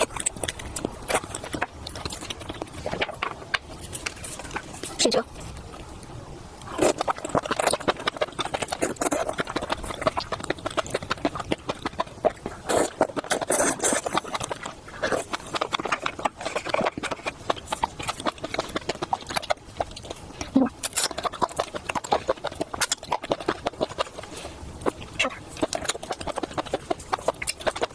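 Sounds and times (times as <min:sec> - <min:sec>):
person chewing seafood: 0:00.0 - 0:27.9.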